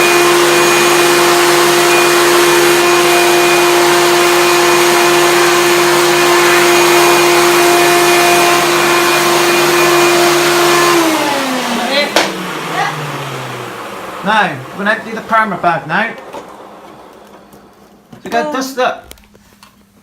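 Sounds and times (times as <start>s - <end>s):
vacuum cleaner motor whine: 0.0s - 19.9s.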